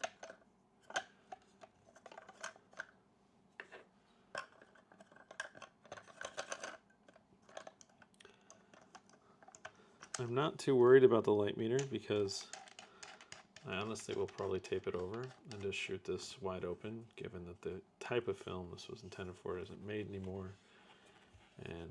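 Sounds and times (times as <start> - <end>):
batteries clicking against plastic: 11.8 - 15.7.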